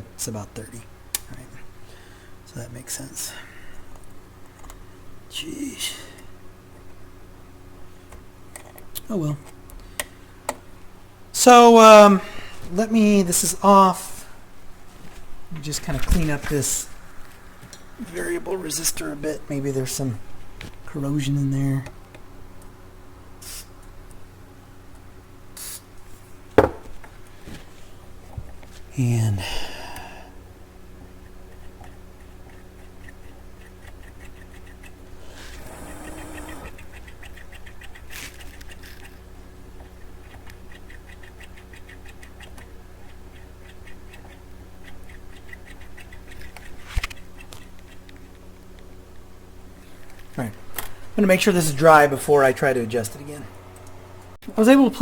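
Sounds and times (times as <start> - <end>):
steady low hum: 0.0 - 55.0
aerosol spray hissing: 23.4 - 23.7, 25.6 - 25.9
sharp knock: 26.6 - 26.9.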